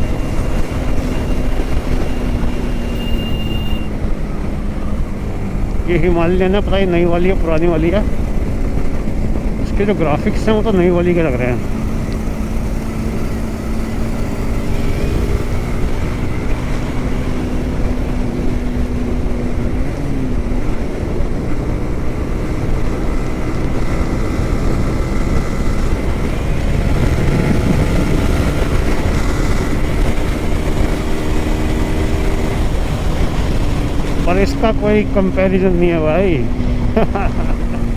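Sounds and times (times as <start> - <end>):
motorcycle engine cruising: 0.0 - 37.9
wind rush on microphone: 0.0 - 37.9.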